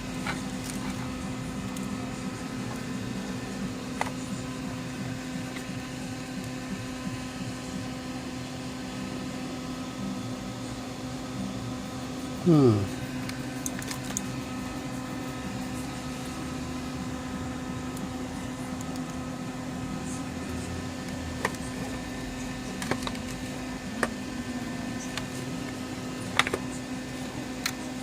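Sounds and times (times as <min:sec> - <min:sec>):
steady electric hum: 0:00.0 - 0:28.0.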